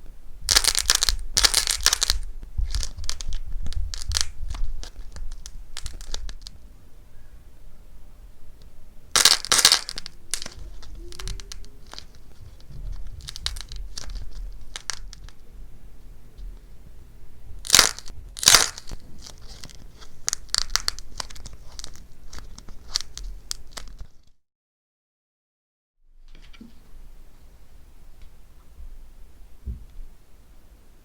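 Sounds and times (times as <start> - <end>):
dried clay crunching by hand: 0.5 - 6.6, 9.2 - 15.4, 17.6 - 24.3.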